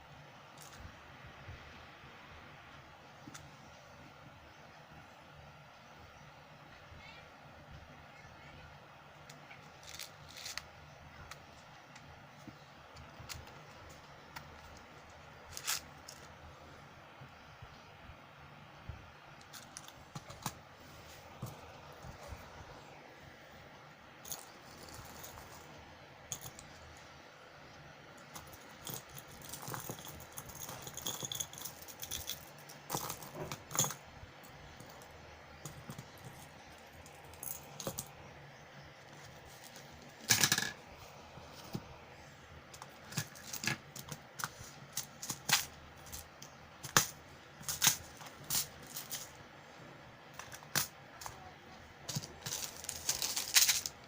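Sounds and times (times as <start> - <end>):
objects clattering: 28.3 - 34.0, 39.2 - 40.8, 52.1 - 54.0
small hard objects clicking: 52.1 - 54.0.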